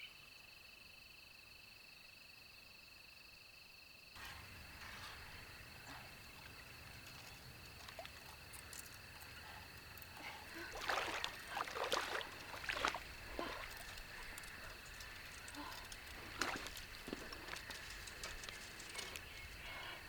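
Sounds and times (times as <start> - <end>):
insects calling: 0.0 - 20.0.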